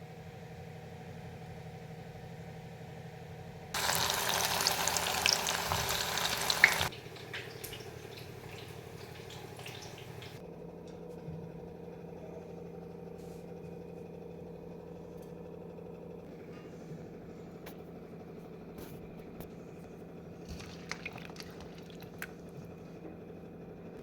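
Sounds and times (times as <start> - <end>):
food sizzling in hot oil: 3.8 - 10.4.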